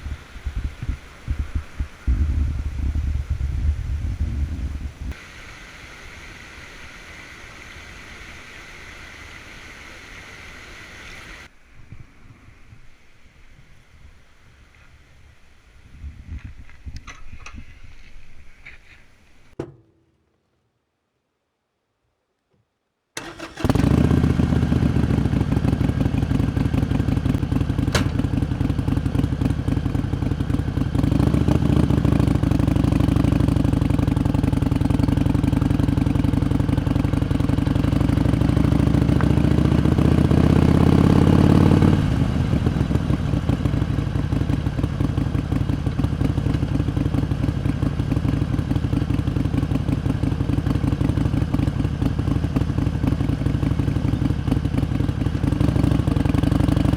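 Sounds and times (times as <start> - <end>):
motorcycle engine revving: 23.2 - 56.9
sharp click: 28.0 - 28.2.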